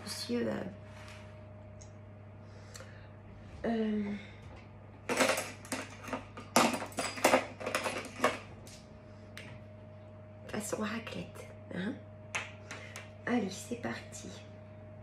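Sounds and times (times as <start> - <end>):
dishes and utensils clattering: 5.1 - 8.5.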